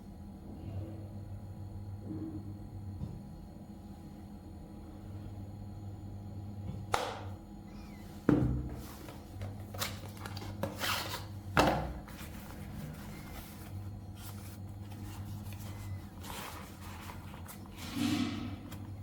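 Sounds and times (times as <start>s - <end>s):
handling rubbing and scraping: 11.9s - 19.0s.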